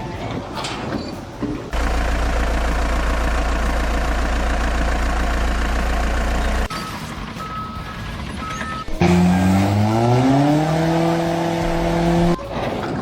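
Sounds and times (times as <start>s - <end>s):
heavy engine rumbling: 1.3s - 13.0s.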